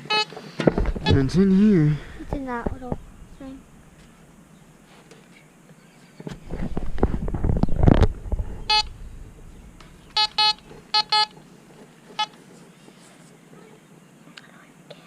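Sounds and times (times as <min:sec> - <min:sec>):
metal detector beeps: 0:00.0 - 0:00.3, 0:01.0 - 0:01.3, 0:08.6 - 0:11.4
rough scraping and rustling: 0:06.3 - 0:10.8.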